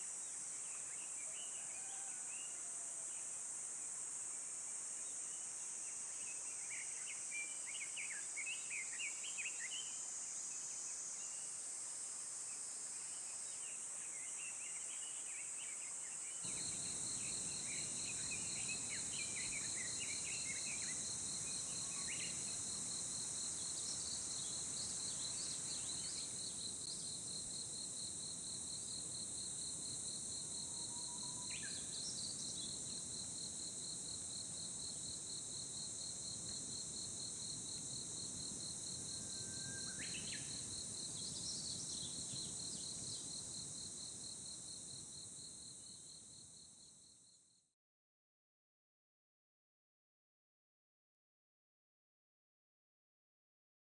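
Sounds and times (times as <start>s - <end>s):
high insect chorus: 0.0s - 47.6s
cricket trilling: 16.5s - 26.7s.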